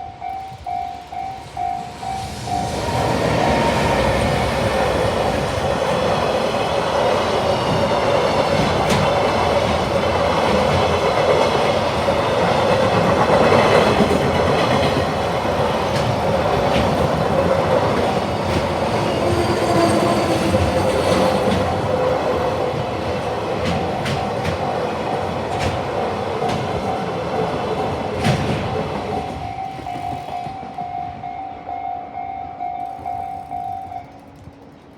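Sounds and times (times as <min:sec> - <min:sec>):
level crossing warning bell: 0:00.0 - 0:02.9, 0:29.0 - 0:34.5
train wheels rumbling on rails: 0:00.0 - 0:34.9
wheels clicking over rail joints: 0:04.8 - 0:27.0, 0:32.5 - 0:34.9.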